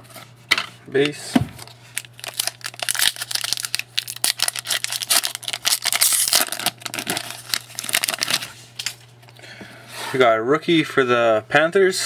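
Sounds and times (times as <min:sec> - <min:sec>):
low steady hum: 0:00.0 - 0:12.0
foil wrapper crinkling and tearing: 0:01.6 - 0:09.0.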